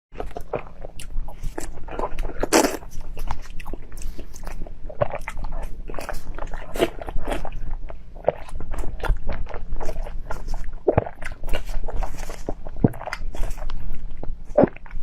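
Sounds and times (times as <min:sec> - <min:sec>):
crunchy chewing: 0:00.2 - 0:15.0.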